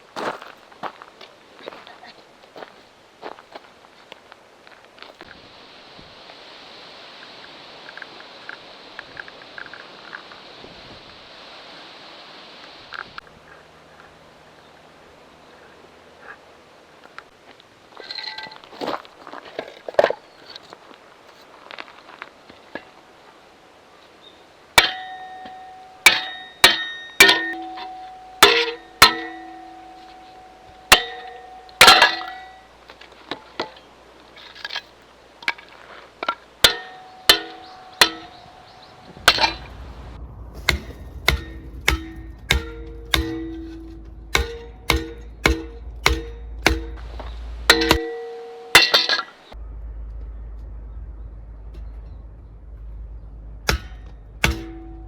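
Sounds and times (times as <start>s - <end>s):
metallic clinks and clangs: 18.0s - 18.6s, 24.8s - 32.7s, 36.2s - 39.7s, 40.6s - 49.6s.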